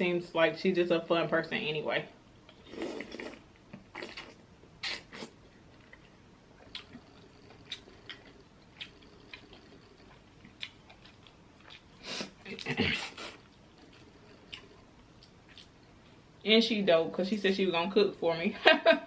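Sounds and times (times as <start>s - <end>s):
wet chewing: 2.5s - 16.1s.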